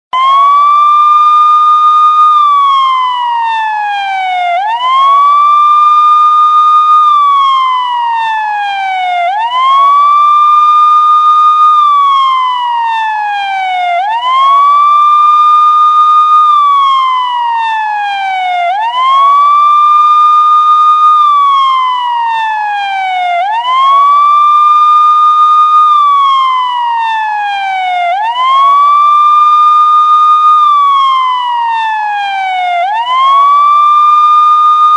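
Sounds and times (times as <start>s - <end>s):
police siren wailing: 0.1s - 34.9s.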